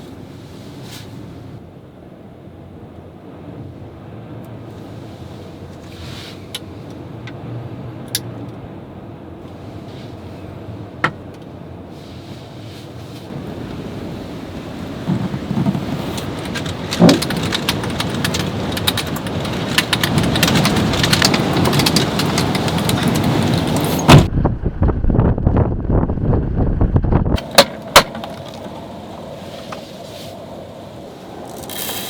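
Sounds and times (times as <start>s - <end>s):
strong wind rushing: 13.3s - 32.0s
sharp ticks and knocks: 15.1s - 24.1s.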